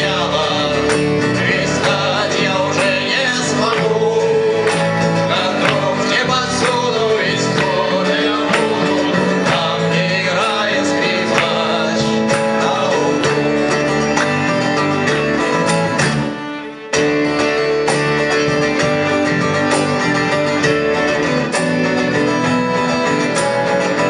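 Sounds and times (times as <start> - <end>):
person singing: 0.0 - 14.6
band playing a song: 0.0 - 24.0
percussion hits: 0.0 - 24.0.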